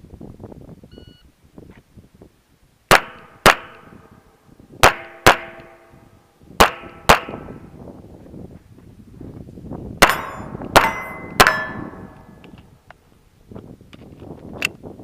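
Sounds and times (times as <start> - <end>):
pistol shots: 2.9 - 3.9, 4.8 - 5.9, 6.6 - 7.5, 10.0 - 12.2
metallic ring of steel targets: 4.8 - 6.0, 10.0 - 12.5.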